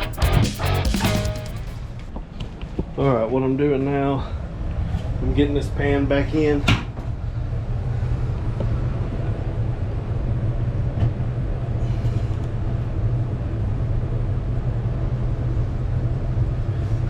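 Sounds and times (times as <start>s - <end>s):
steady low rumble: 0.0s - 2.4s.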